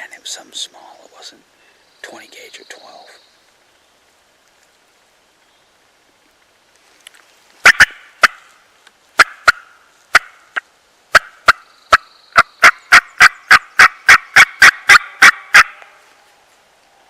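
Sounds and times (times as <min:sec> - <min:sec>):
turkey hen yelping: 0:11.1 - 0:15.8.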